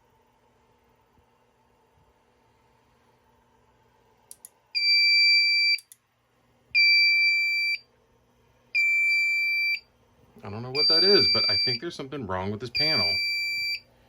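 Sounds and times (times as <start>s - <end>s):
faint clicks: 4.3s - 4.6s
alarm panel beeping: 6.8s - 7.8s, 10.8s - 11.9s, 12.8s - 13.8s.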